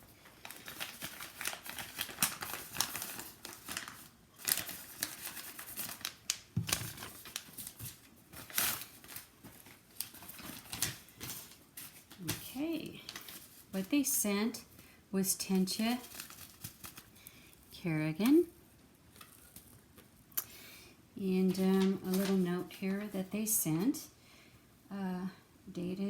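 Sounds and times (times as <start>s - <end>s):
paper envelope crinkling: 0.0s - 14.1s, 15.5s - 18.5s, 21.5s - 23.3s.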